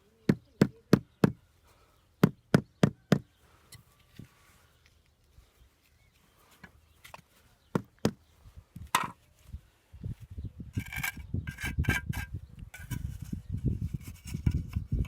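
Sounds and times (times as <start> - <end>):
rough rattling and scraping: 10.7 - 15.0.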